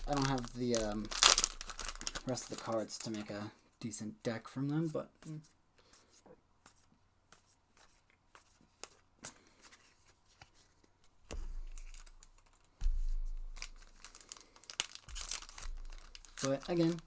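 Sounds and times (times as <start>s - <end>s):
foil wrapper crinkling and tearing: 0.0s - 3.4s, 11.7s - 17.0s.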